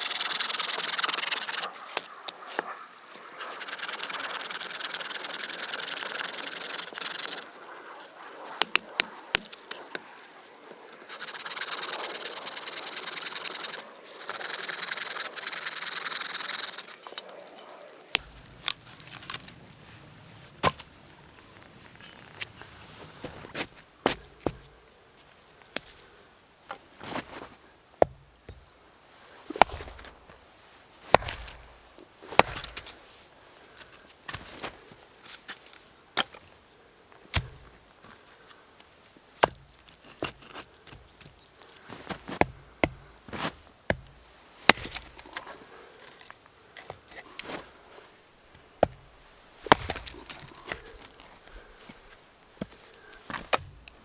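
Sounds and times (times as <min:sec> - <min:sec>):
blade chopping wood: 0:28.0 - 0:28.6, 0:29.5 - 0:30.3, 0:31.1 - 0:33.0, 0:37.3 - 0:37.7, 0:39.4 - 0:41.0, 0:42.3 - 0:45.4, 0:48.8 - 0:51.1, 0:52.6 - 0:54.0.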